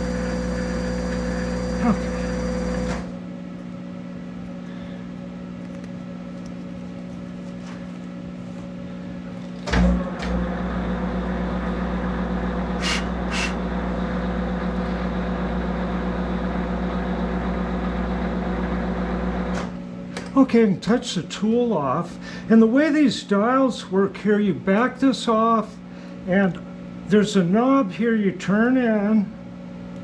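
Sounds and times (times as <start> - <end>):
electric motor hum: 0.0 - 3.2, 9.6 - 19.4.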